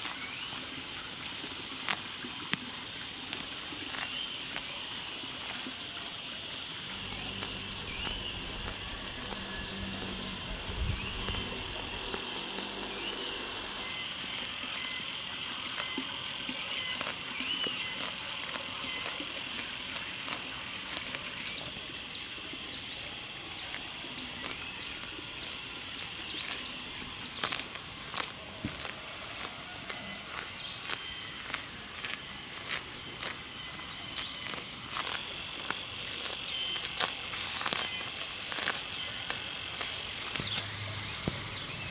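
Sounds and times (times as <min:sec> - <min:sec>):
insects or frogs droning: 0:00.0 - 0:41.9
low hum: 0:06.4 - 0:15.1, 0:39.8 - 0:41.9.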